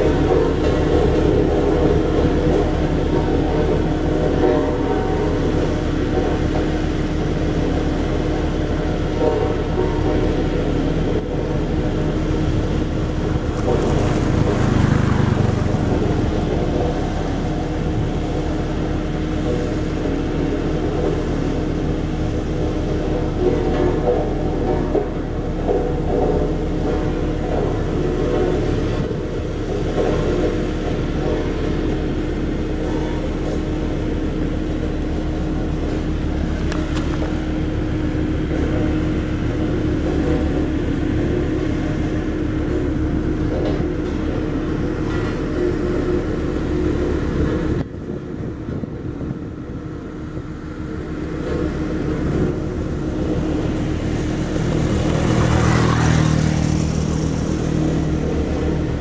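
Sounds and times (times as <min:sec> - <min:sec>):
diesel roller engine running: 0:00.0 - 0:59.0.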